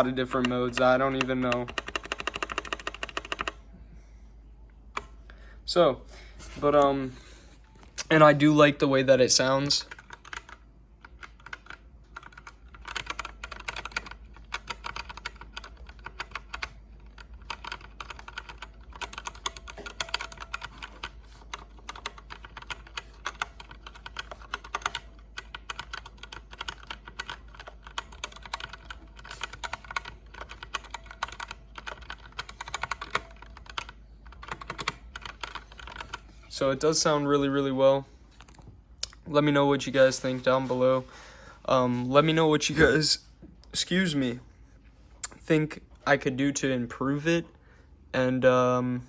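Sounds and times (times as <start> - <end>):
mechanical keyboard typing: 0.0 - 3.6, 9.7 - 36.3.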